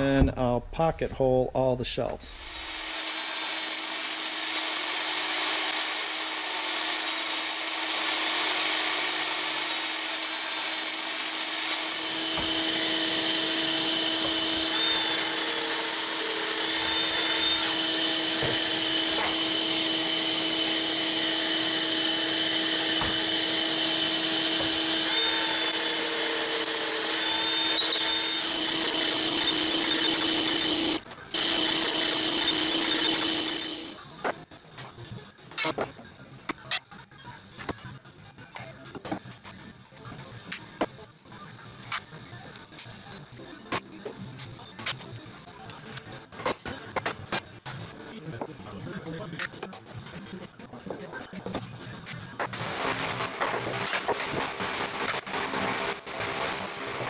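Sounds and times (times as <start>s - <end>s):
power tool motor hum: 2.3s - 34.0s.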